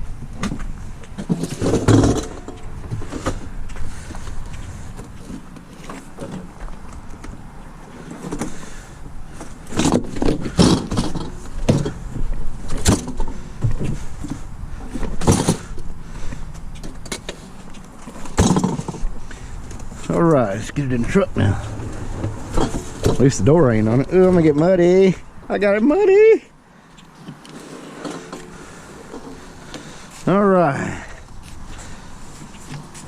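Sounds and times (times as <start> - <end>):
sharp knocks and clanks: 0.4 - 3.5, 9.7 - 15.8, 18.2 - 19.1.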